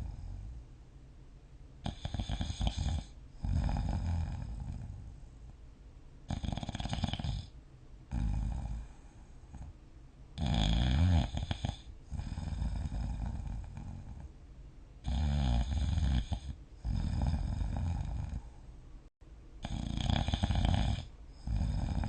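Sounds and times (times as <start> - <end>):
person snoring: 1.8 - 5.2, 6.3 - 7.5, 8.1 - 9.7, 10.4 - 14.3, 15.0 - 18.5, 19.6 - 22.0
soft breathing: 7.4 - 9.8.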